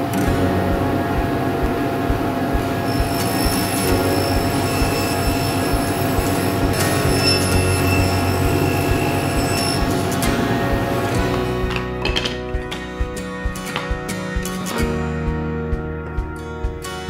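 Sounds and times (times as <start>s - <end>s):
power tool whine: 2.8s - 10.4s
high squealing tones: 2.9s - 10.3s.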